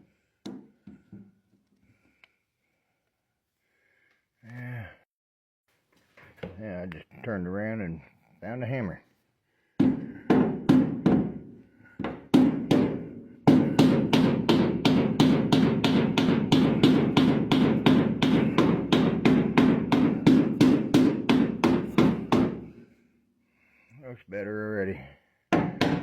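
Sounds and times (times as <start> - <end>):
hammer striking sheet metal: 12.3 - 22.7.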